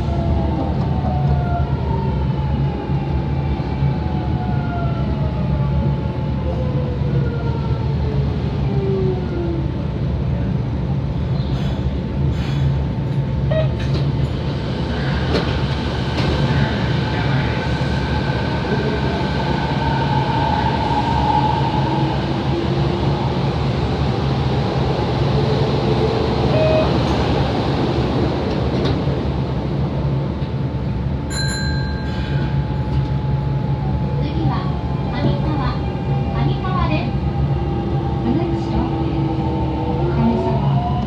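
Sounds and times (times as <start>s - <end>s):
train wheels rumbling: 11.1s - 41.0s.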